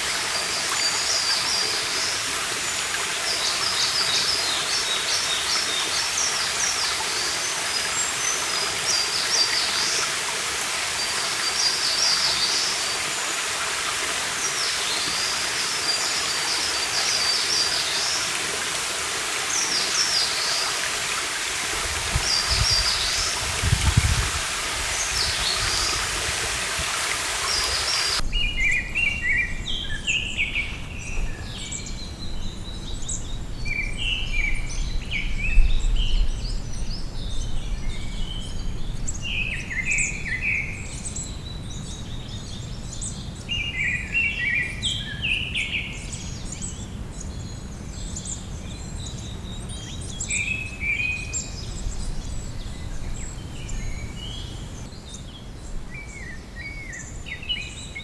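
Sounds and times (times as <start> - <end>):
rushing stream water: 0.0 - 29.4.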